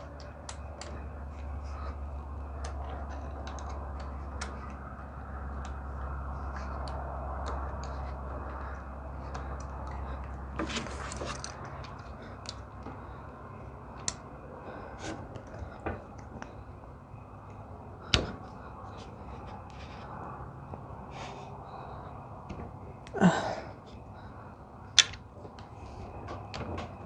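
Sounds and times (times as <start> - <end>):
light clicks and handling noises: 0.0 - 23.2, 23.8 - 27.0
steady low hum: 0.0 - 27.0.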